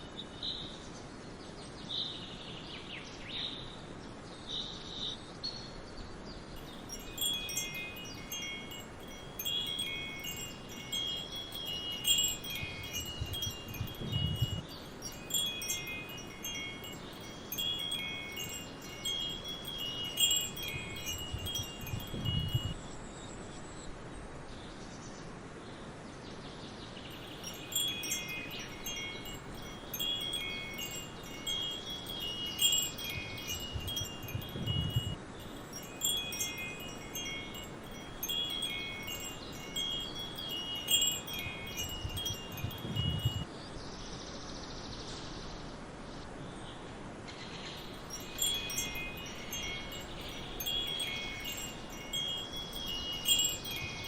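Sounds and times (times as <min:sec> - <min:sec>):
steady background hiss: 0:00.0 - 0:54.0
wind chimes ringing: 0:06.6 - 0:22.8, 0:27.1 - 0:43.5, 0:47.8 - 0:54.0.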